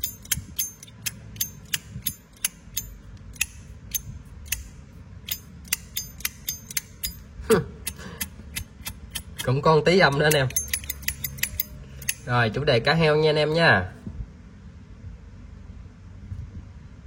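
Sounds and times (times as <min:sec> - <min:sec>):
wristwatch mechanism clicking: 0:00.0 - 0:12.3.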